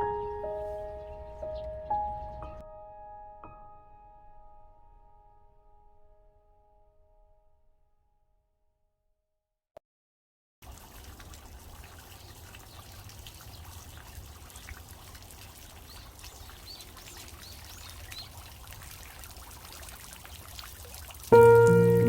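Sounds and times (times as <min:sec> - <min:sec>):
fountain water splashing: 0:10.6 - 0:22.0
music with bell-like notes: 0:21.4 - 0:22.0.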